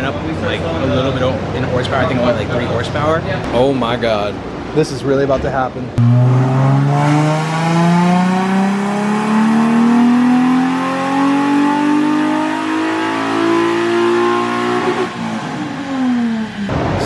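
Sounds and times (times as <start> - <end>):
car engine revving at full throttle: 6.0 - 16.8.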